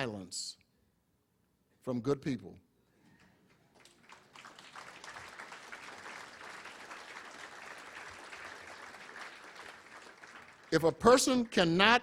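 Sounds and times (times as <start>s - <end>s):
audience applauding: 3.7s - 11.7s.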